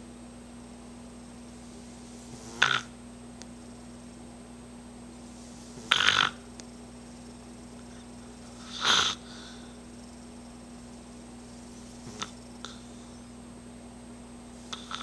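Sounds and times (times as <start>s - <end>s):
dog snoring: 2.0s - 3.0s, 5.3s - 6.5s, 7.9s - 9.8s, 11.7s - 13.3s, 14.7s - 15.0s.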